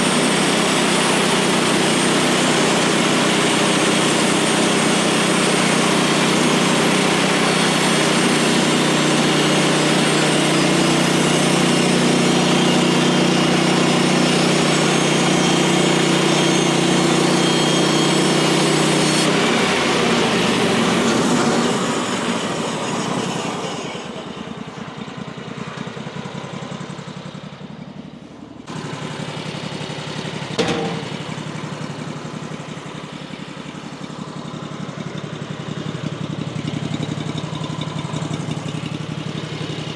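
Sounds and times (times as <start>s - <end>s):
saw blade hissing: 0.0s - 24.1s
sawmill engine running: 0.0s - 39.9s.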